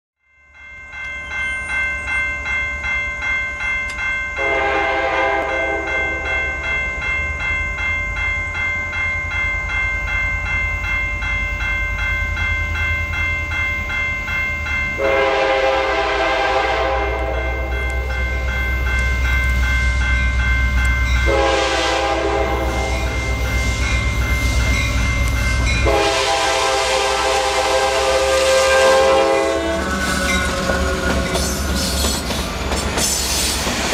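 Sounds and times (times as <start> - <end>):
train passing: 0.6 - 33.9
multi-tone train air horn blasts: 4.4 - 6.3, 15.0 - 17.7, 21.2 - 23.2, 25.8 - 31.4
locomotive engine rumble: 15.0 - 33.9.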